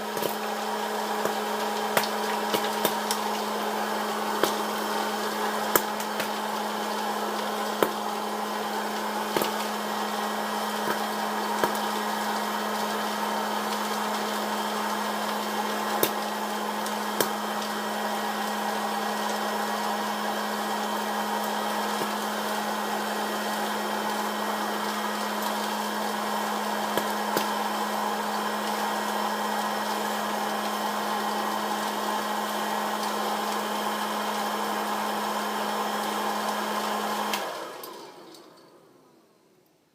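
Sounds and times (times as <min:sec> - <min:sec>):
popcorn kernels popping: 0:00.0 - 0:30.8
popcorn popper fan humming: 0:00.0 - 0:39.9.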